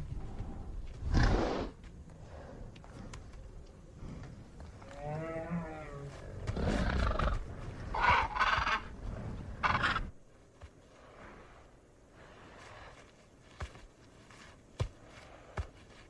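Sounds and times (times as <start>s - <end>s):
dinosaur roars and calls: 4.9s - 10.1s.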